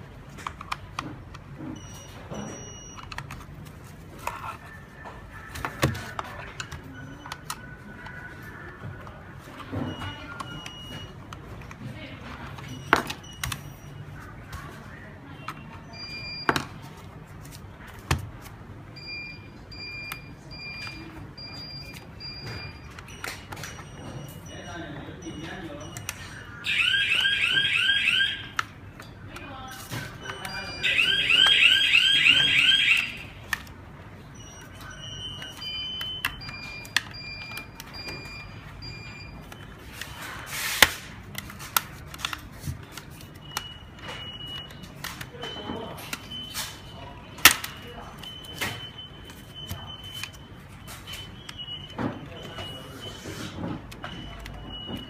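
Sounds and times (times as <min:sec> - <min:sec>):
alarm panel beeping: 0:19.0 - 0:28.6, 0:30.2 - 0:33.6, 0:34.2 - 0:40.1.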